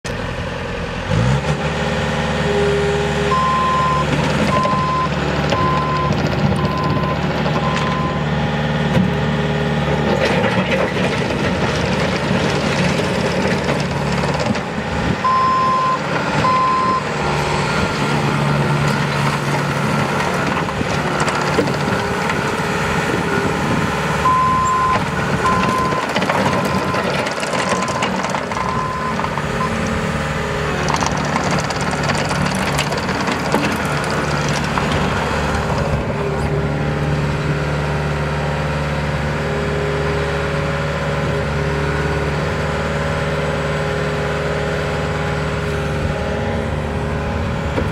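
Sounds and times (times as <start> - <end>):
diesel engine running: 0.0 - 47.9
backup alarm beeping: 3.3 - 8.3, 15.2 - 17.0, 24.2 - 27.1.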